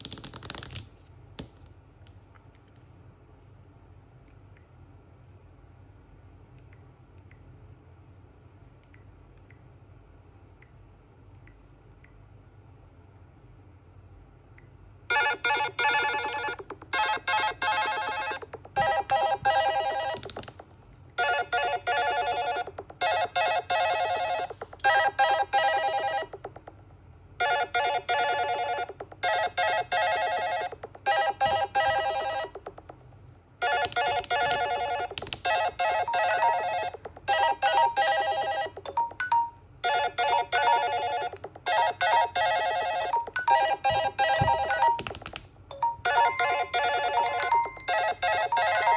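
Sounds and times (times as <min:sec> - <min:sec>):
smartphone alarm melody: 0:15.1 - 0:20.2, 0:21.2 - 0:26.6, 0:27.4 - 0:32.8, 0:33.6 - 0:45.1, 0:45.7 - 0:48.9.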